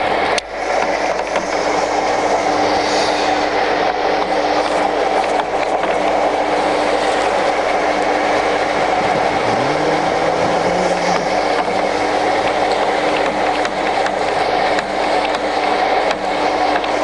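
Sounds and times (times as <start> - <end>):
lathe gears humming and rattling: 0.0 - 17.0
low rising tone: 9.0 - 12.6.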